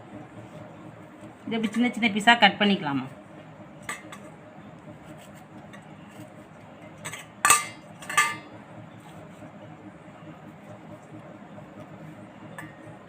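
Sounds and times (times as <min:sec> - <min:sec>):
knife clinking against plate: 0:07.0 - 0:08.5.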